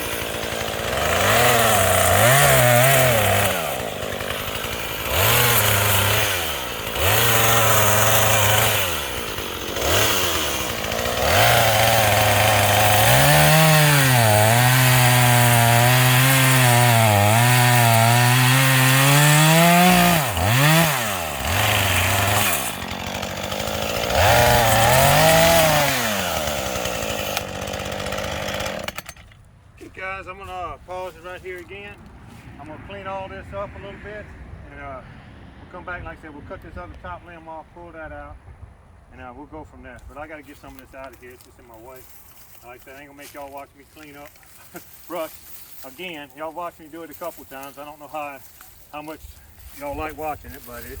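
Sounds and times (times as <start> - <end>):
chainsaw revving and cutting wood: 0.0 - 29.4, 40.2 - 51.0.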